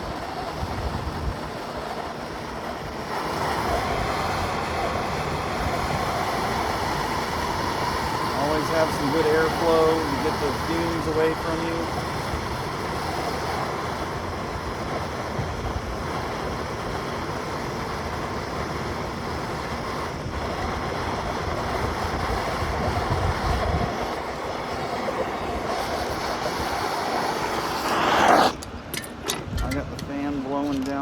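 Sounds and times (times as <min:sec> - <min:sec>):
wind buffeting microphone: 0:00.0 - 0:30.9
fan blowing air: 0:00.0 - 0:31.0.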